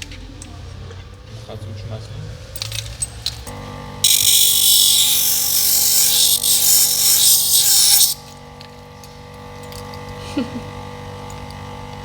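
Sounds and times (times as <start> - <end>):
electric grinder motor whine: 3.5 - 8.8
harsh grinding hiss: 4.0 - 8.3.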